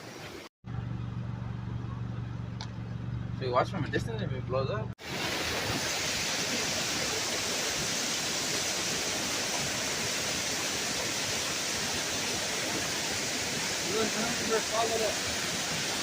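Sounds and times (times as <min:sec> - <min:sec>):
flowing water rushing: 0:05.0 - 0:16.0.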